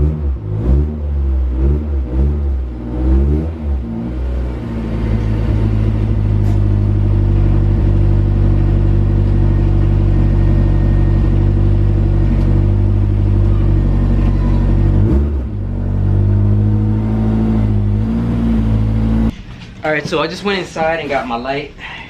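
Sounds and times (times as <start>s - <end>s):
car engine running: 0.0s - 19.4s.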